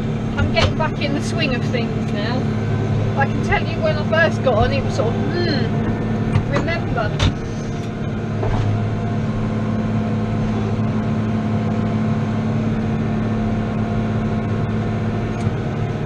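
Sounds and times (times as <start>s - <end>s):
tractor diesel engine running: 0.0s - 16.0s.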